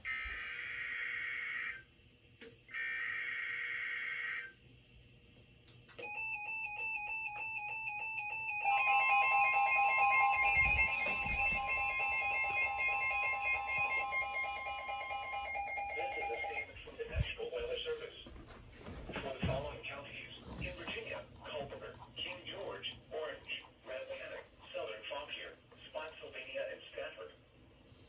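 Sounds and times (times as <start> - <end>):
continuous alarm tone: 0.0 - 4.7, 5.9 - 25.5
pulsing beep: 6.1 - 16.7.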